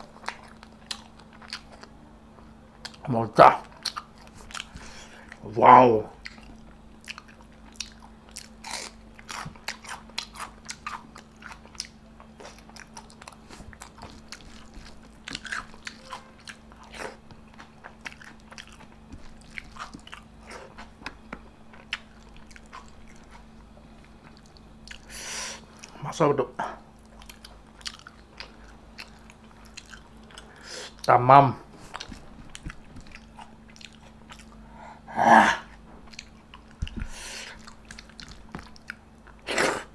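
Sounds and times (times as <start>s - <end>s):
crunchy bites and chewing: 6.2s - 25.1s, 27.0s - 31.0s, 35.6s - 39.9s.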